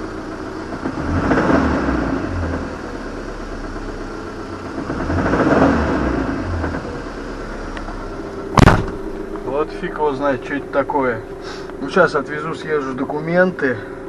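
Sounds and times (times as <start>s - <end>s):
engine knocking: 0.0s - 8.2s
engine revving from idle: 0.0s - 9.8s.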